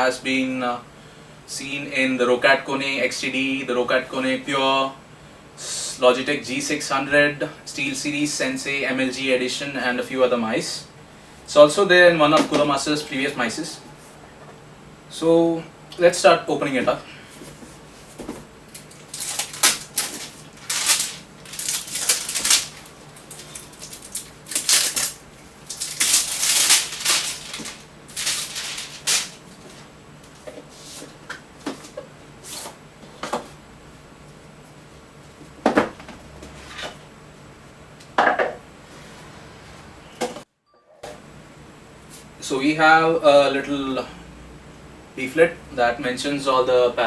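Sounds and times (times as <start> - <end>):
packaging scraping and rustling: 18.7 - 29.8.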